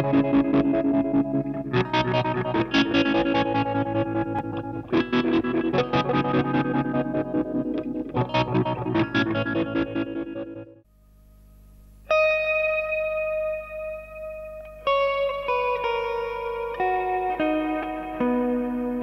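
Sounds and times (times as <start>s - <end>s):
electric guitar with reverb: 0.0s - 10.8s, 12.1s - 19.0s.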